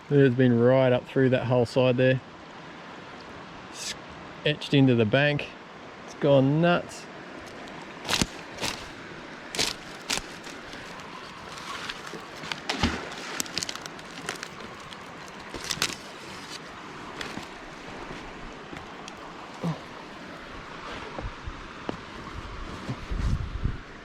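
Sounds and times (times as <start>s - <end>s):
footsteps crunching on sticks: 7.4s - 20.4s.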